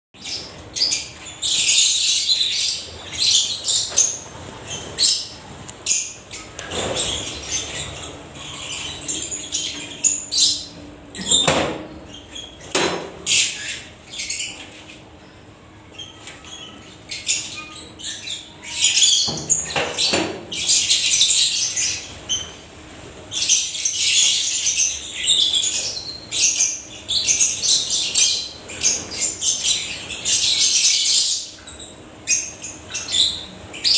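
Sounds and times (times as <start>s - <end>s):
lovebirds chattering shrilly: 0.2s - 15.1s.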